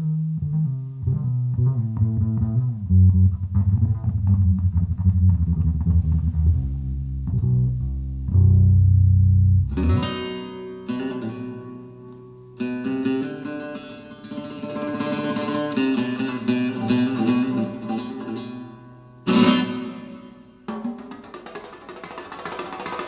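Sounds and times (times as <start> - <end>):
deep bass note: 0.0 - 10.1
plucked string notes: 0.0 - 23.0.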